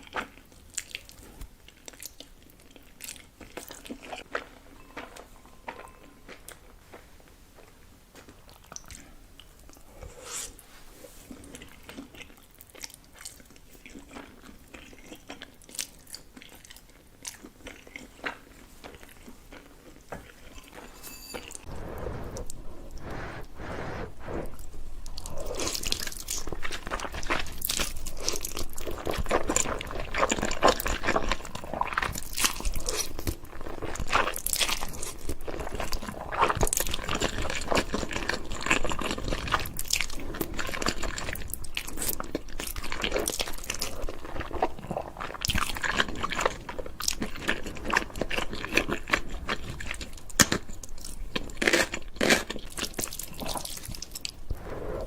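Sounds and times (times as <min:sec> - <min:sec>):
crunchy chewing: 0:21.6 - 0:55.0.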